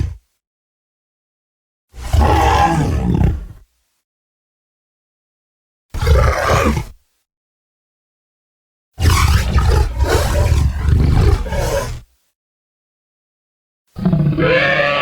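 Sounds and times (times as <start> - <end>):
deep dinosaur roar: 14.0 - 15.0
higher-pitched creature call: 14.3 - 15.0.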